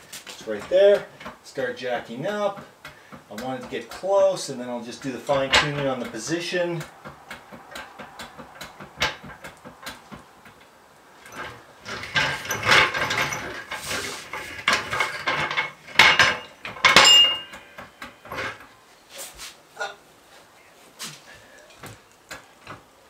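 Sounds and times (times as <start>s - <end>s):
car jack scraping and clattering: 0.0s - 18.7s
car jack clicking: 4.9s - 13.8s.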